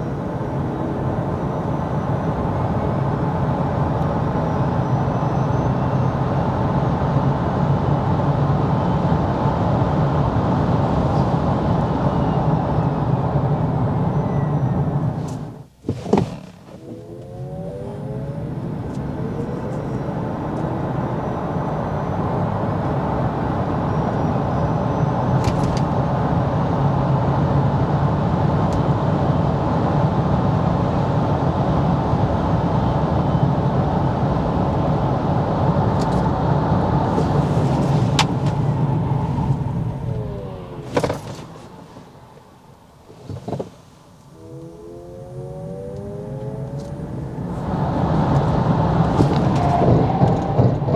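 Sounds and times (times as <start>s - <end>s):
road and tyre noise: 0.0s - 50.9s
electric motor whine: 37.2s - 42.7s.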